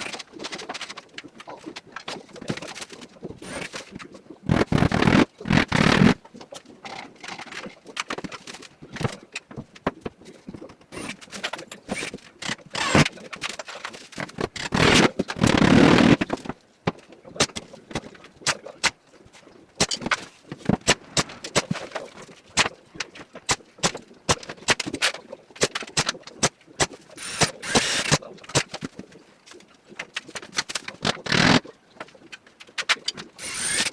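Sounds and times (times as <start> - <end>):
knocks and clicks of tools and timber: 2.5 - 3.9, 4.5 - 6.2, 7.2 - 19.0, 19.8 - 29.0, 30.0 - 31.6, 32.6 - 33.9
scraping burst: 11.9 - 13.1, 14.3 - 16.2, 20.8 - 22.0, 27.2 - 28.2, 33.4 - 33.9.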